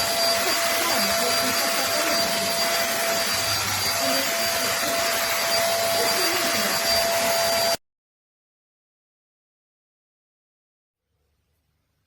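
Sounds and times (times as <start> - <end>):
vacuum cleaner running: 0.0 - 7.8.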